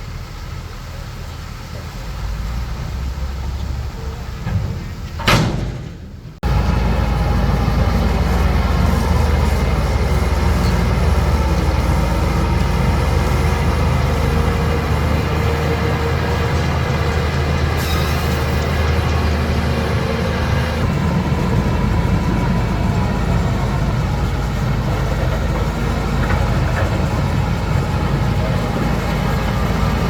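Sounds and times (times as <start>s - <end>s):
heavy diesel engine running: 0.0s - 30.0s
loud metal clank: 4.4s - 6.4s, 17.8s - 18.8s.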